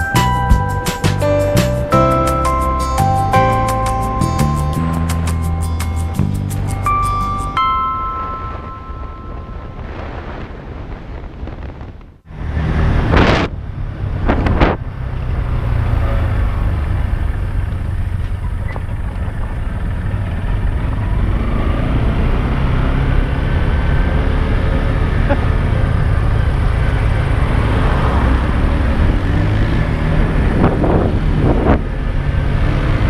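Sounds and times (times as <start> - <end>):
wind noise on microphone: 0.0 - 33.0
motorcycle engine running: 12.4 - 33.0.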